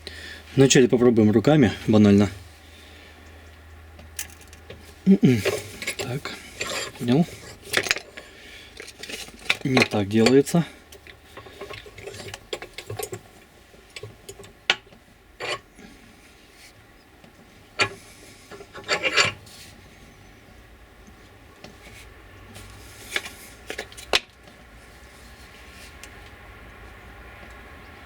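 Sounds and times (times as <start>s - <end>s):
metal clicks and scrapes: 5.4s - 13.2s, 13.9s - 15.7s, 17.8s - 19.5s.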